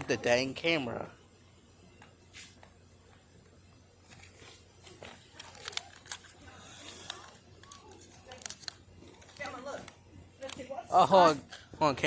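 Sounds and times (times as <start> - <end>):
camera handling rustling: 4.0 - 10.7.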